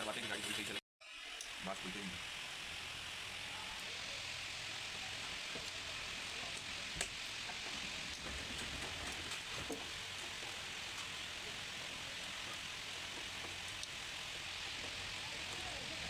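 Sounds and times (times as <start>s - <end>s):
steady hiss: 0.0s - 16.0s.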